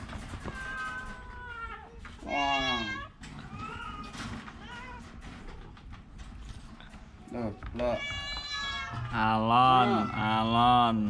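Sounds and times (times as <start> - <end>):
cat meowing: 7.8 - 10.4.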